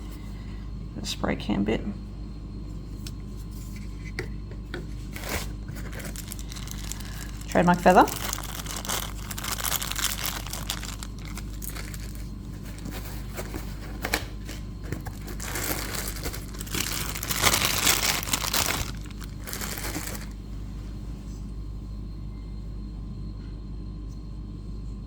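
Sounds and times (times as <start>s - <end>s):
packaging crinkling and rustling: 5.1s - 20.5s.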